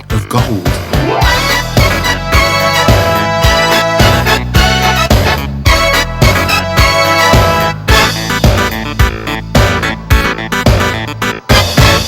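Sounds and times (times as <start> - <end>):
upbeat electronic music: 0.0 - 12.0.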